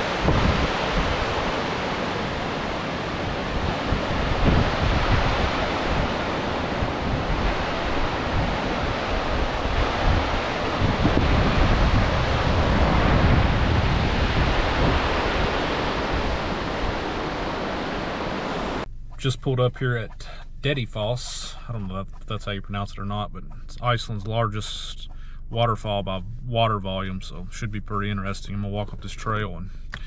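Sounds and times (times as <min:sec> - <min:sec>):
waterfall rushing: 0:00.0 - 0:18.8
wind buffeting microphone: 0:00.0 - 0:18.8.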